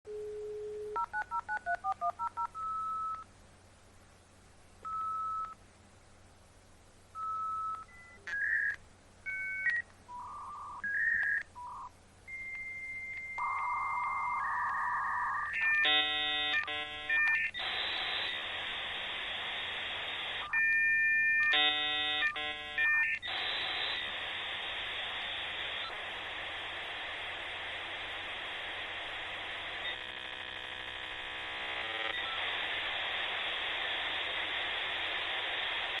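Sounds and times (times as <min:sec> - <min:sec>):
modem data hiss: 0:07.1 - 0:36.0
modem warbling chirps: 0:07.6 - 0:18.4.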